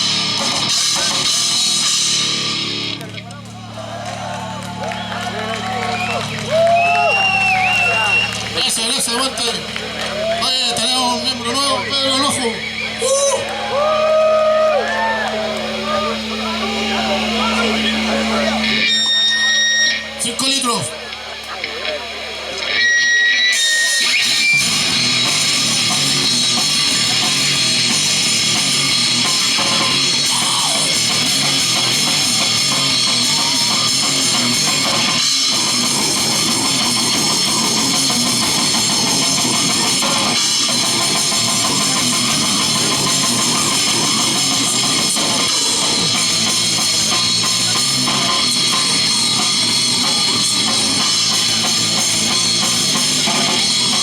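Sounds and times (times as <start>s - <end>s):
electric guitar: 0.0s - 54.0s
rock band playing: 0.0s - 54.0s.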